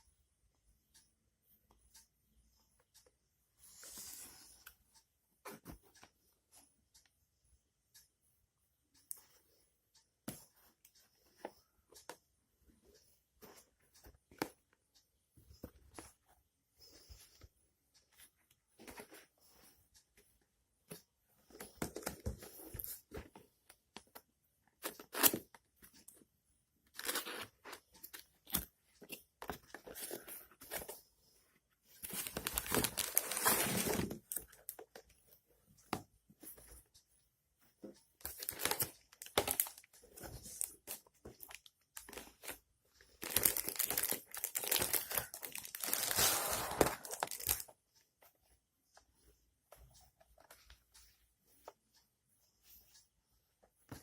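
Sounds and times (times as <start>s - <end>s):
packaging tearing and crinkling: 43.2s - 47.6s.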